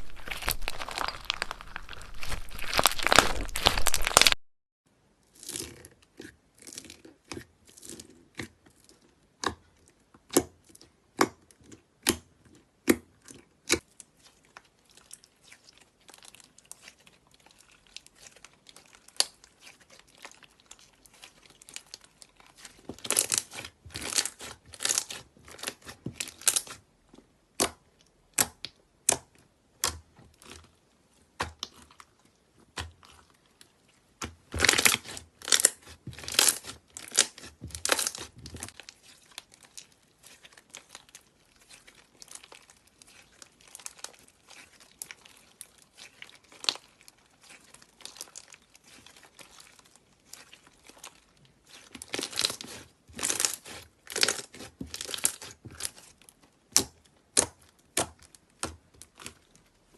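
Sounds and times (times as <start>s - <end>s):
slime crackling and popping: 0.0s - 4.4s, 13.6s - 26.9s, 27.5s - 59.8s.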